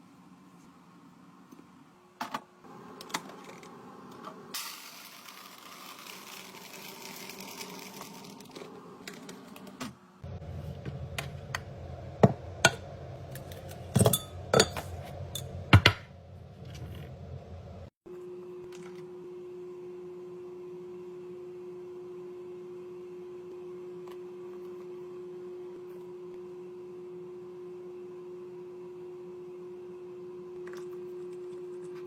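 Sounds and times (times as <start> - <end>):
dishes and glassware clinking: 13.9 - 16.0.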